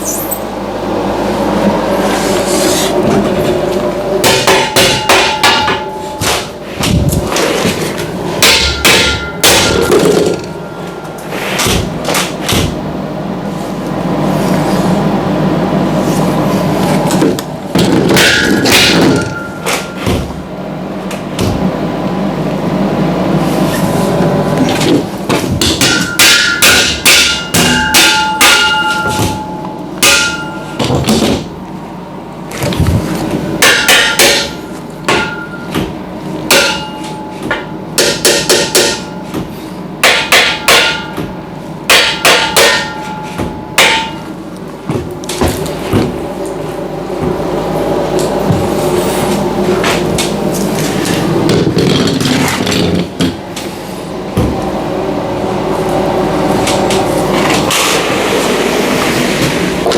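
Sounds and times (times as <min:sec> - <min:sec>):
hammer striking metal: 0:04.2 - 0:06.5, 0:08.4 - 0:10.6, 0:17.8 - 0:20.2, 0:25.6 - 0:31.4, 0:33.6 - 0:35.9, 0:36.5 - 0:39.4, 0:40.0 - 0:44.3.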